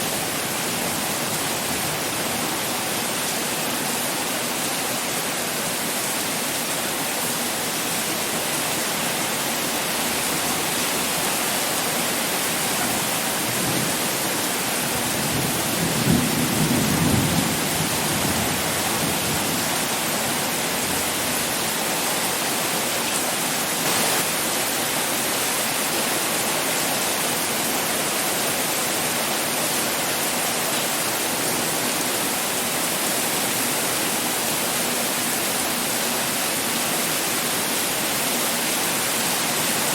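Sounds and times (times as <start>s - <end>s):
pouring rain: 0.0s - 39.9s.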